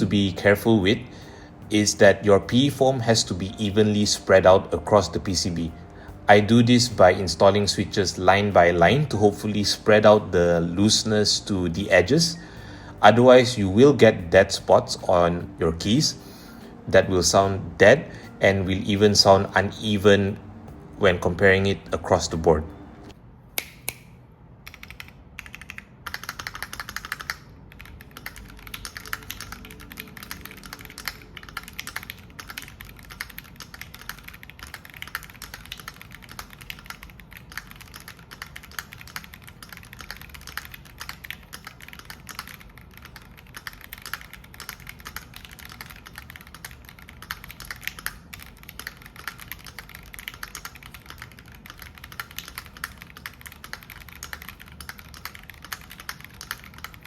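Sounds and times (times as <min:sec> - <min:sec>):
mechanical keyboard typing: 0:24.6 - 0:57.0.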